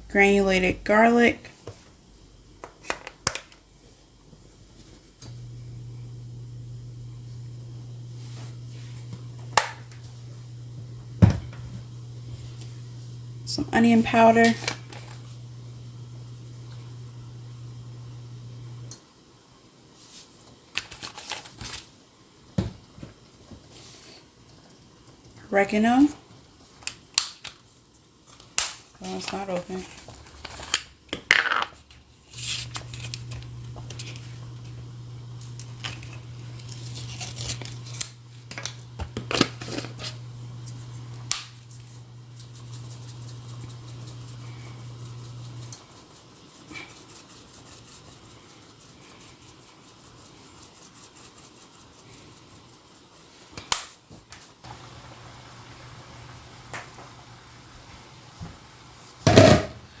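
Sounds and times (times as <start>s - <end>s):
steady low hum: 3.7s - 18.9s, 31.9s - 46.9s.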